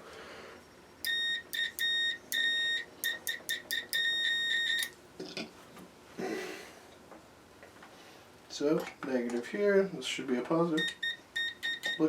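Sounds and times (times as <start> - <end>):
multimeter continuity beeps: 0.6 - 4.9, 10.8 - 12.0.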